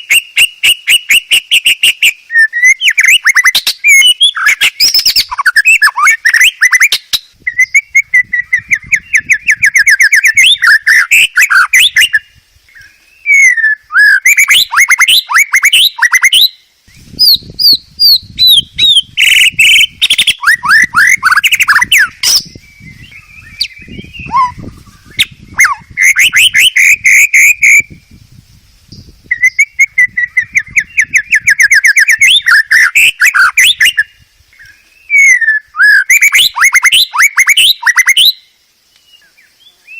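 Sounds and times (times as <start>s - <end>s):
bird singing trills and whistles: 0.0s - 39.9s.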